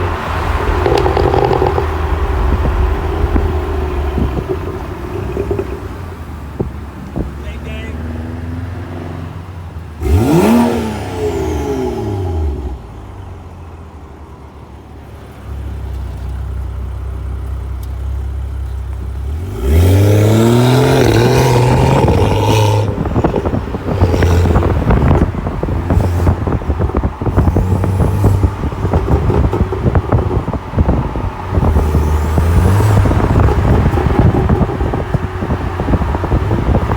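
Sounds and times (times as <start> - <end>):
car exhaust revving: 0.0 - 7.4, 9.8 - 13.4, 19.1 - 36.9
exhaust crackles and pops: 0.0 - 7.4, 15.8 - 36.9.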